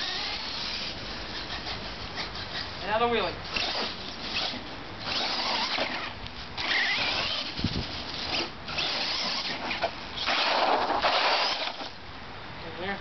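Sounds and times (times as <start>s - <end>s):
toy truck motor whining: 0.0s - 2.8s, 3.5s - 12.0s.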